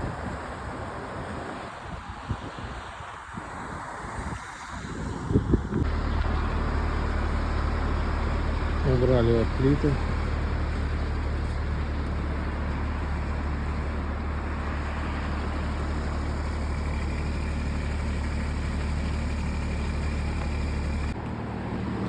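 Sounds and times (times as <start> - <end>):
diesel engine running: 5.8 - 22.0.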